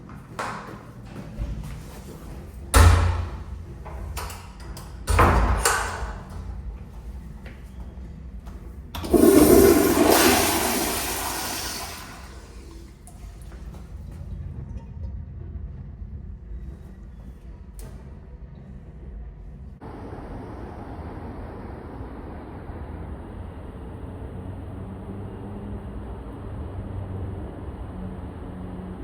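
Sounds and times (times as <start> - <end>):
toilet flushing: 9.0 - 15.1.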